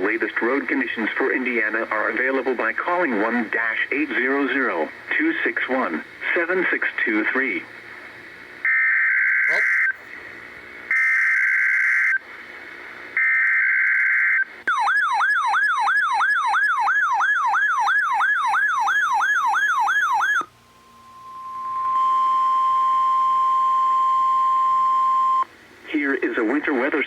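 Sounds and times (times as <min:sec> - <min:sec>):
steady warning alarm tone: 0:13.2 - 0:25.5
siren-like alert tone sweeping down: 0:14.7 - 0:25.4.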